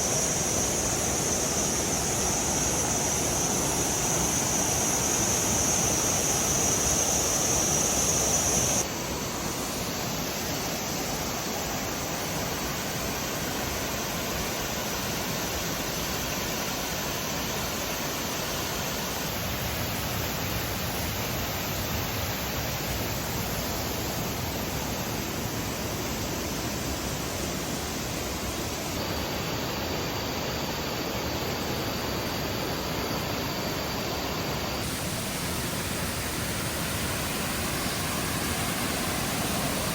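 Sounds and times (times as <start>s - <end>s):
waterfall rushing: 0.0s - 8.8s, 34.8s - 39.9s
high steady hiss: 0.0s - 39.9s.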